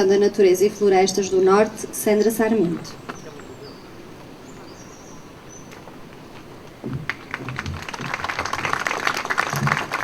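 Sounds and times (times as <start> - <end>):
bird chirps: 2.9 - 5.8
audience applause: 7.0 - 10.0.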